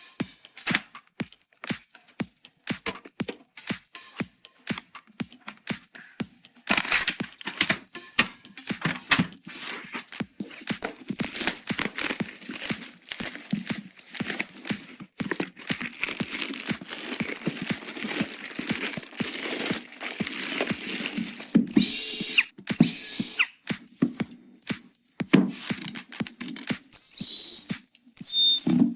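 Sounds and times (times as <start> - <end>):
clicks and knocks from handling parts: 6.7 - 9.4
plastic packaging crinkling and tearing: 10.9 - 21.6.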